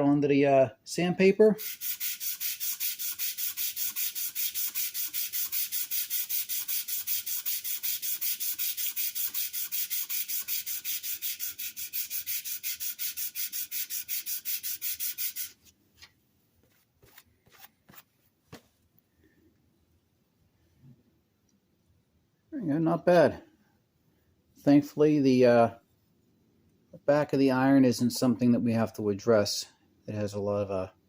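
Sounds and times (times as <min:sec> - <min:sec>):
plane iron scraping on sandpaper: 0:01.6 - 0:15.6, 0:16.6 - 0:18.1.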